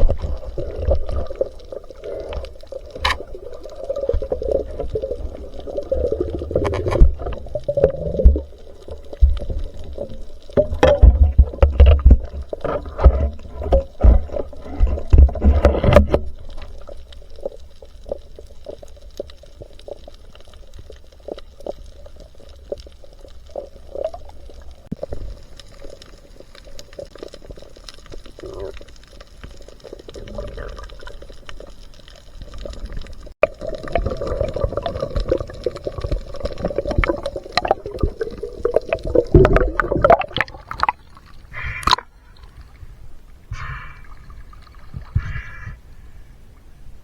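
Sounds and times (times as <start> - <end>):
water sloshing and bubbling: 0.0 - 47.0.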